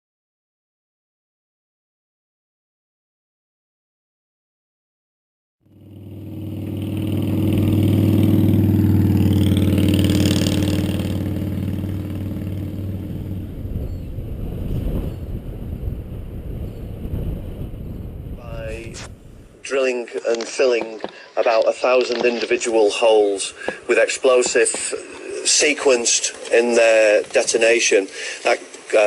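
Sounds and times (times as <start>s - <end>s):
vehicle engine passing: 5.7s - 19.6s.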